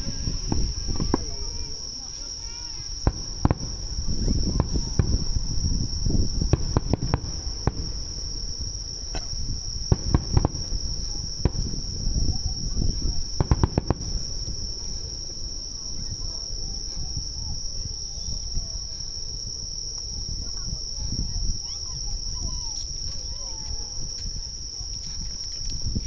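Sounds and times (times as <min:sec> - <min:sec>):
distant fireworks booms and cracks: 0:00.0 - 0:21.5
insects chirring: 0:00.0 - 0:26.0.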